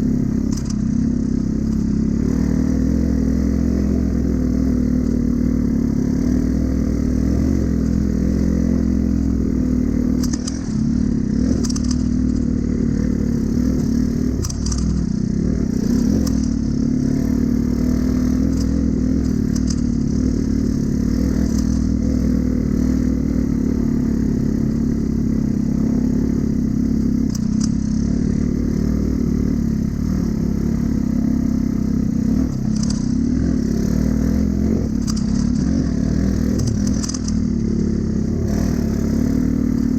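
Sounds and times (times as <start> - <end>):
motorcycle engine running: 0.0 - 39.9
bike clicks and rattles: 0.4 - 2.2, 10.1 - 12.6, 13.6 - 15.2, 18.3 - 20.3, 27.3 - 28.1, 32.4 - 33.3, 34.5 - 37.9.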